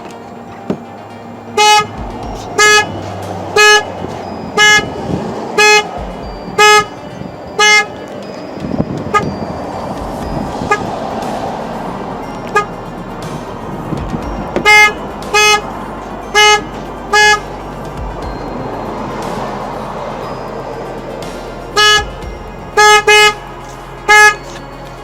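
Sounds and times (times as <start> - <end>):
car horn honking: 0.0 - 25.0.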